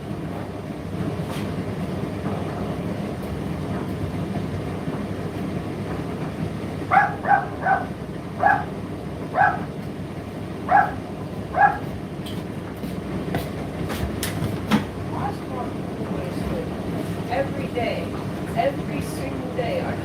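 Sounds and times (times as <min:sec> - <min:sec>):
tumble dryer whirring: 0:00.0 - 0:20.0
dog barking: 0:06.9 - 0:09.7, 0:10.7 - 0:11.9.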